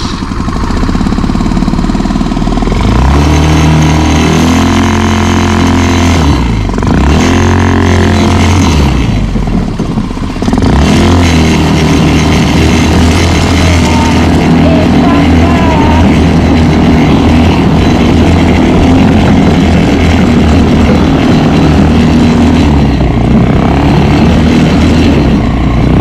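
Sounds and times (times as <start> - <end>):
quad bike engine revving: 0.0 - 26.0.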